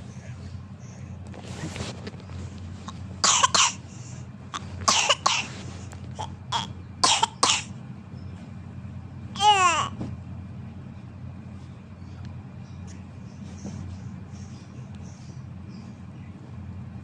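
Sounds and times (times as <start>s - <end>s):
baby coughing: 2.9s - 3.9s, 4.6s - 5.5s, 6.1s - 7.8s, 9.4s - 10.0s.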